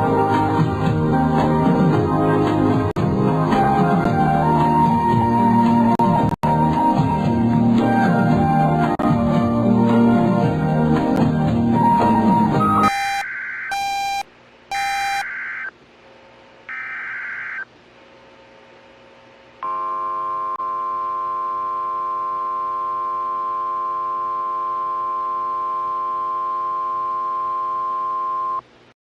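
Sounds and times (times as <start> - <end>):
long steady attention tone: 12.7 - 15.8, 16.7 - 17.7, 19.6 - 28.7.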